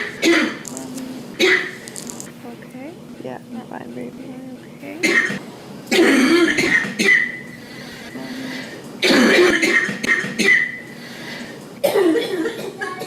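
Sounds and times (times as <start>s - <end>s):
girl coughing: 0.0s - 0.6s, 1.4s - 1.8s, 5.0s - 7.4s, 9.0s - 10.8s, 11.8s - 13.0s.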